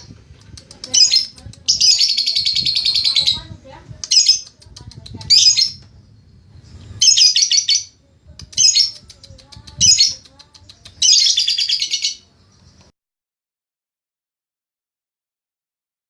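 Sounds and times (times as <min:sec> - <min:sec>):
lovebird chattering: 0:00.0 - 0:05.8, 0:07.0 - 0:12.3.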